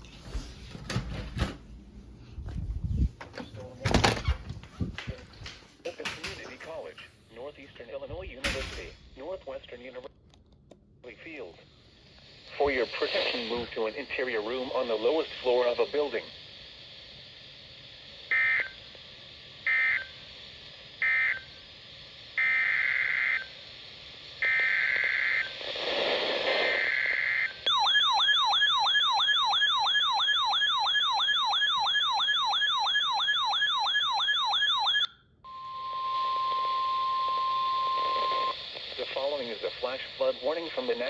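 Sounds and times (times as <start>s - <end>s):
steady alarm tone: 18.3s - 18.8s, 19.6s - 20.2s, 21.0s - 21.6s, 22.3s - 23.6s, 26.9s - 38.6s
warbling siren-like attention tone: 27.1s - 38.5s.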